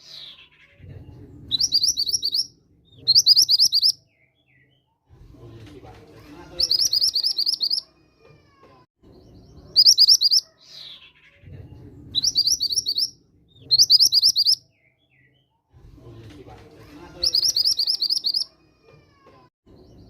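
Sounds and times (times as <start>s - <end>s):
rapid high-pitched bird chirping: 1.5s - 4.3s, 6.5s - 7.9s, 9.2s - 11.5s, 12.1s - 14.7s, 17.2s - 18.5s.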